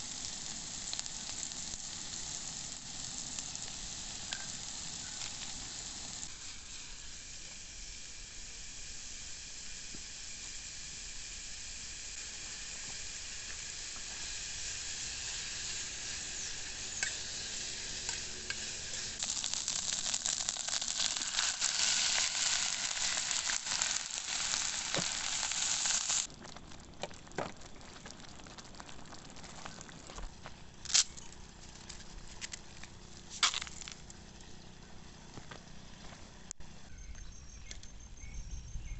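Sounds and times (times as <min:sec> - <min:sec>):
food sizzling in a pan: 0:00.0 - 0:26.3.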